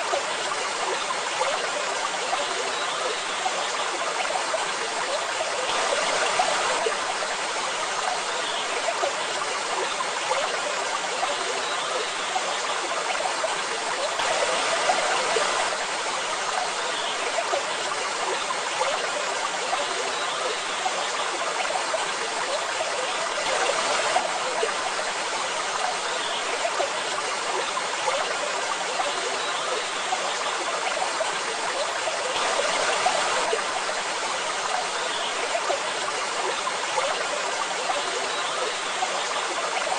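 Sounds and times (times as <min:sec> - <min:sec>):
waterfall rushing: 0:05.6 - 0:07.6, 0:14.2 - 0:16.8, 0:32.0 - 0:36.9.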